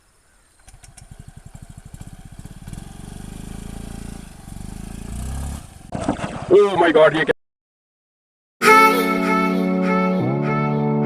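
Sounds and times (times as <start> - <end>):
scooter engine revving: 0.1 - 5.9.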